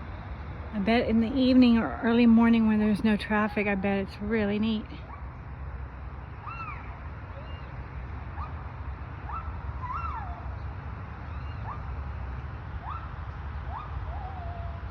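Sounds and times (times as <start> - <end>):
freeway traffic rumble: 0.0 - 14.9
gibbons whooping: 6.4 - 7.7.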